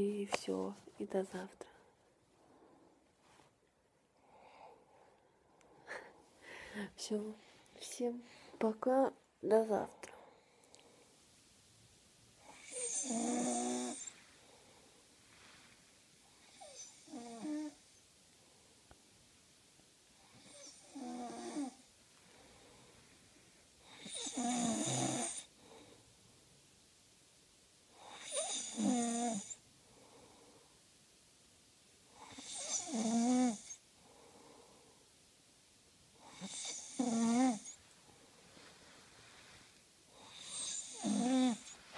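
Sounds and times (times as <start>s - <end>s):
faint breaths: 1.6s - 8.6s, 9.9s - 11.4s, 12.4s - 19.0s, 20.1s - 26.5s, 27.9s - 31.0s, 33.7s - 35.3s, 36.1s - 41.9s
man snoring: 12.5s - 14.1s, 20.4s - 21.8s, 24.0s - 25.5s, 28.1s - 29.6s, 32.2s - 33.8s, 36.3s - 37.8s, 40.2s - 41.8s.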